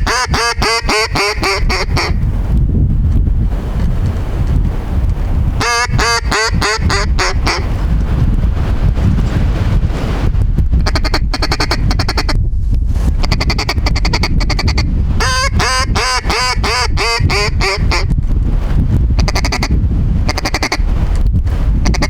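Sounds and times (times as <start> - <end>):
duck chattering and quacking: 0.0 - 2.2, 5.6 - 7.7, 10.8 - 12.4, 13.2 - 18.1, 19.2 - 19.7, 20.3 - 20.8
wind rumble on microphone: 0.0 - 22.0.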